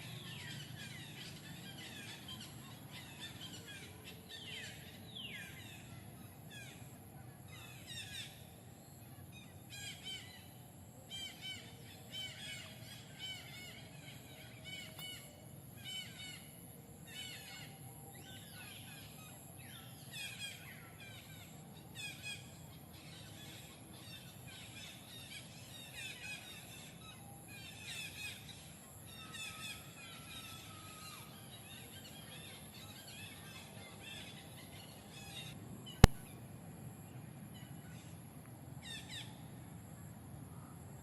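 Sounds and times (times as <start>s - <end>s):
low background hum: 0.0s - 41.0s
sharp click: 36.0s - 36.3s.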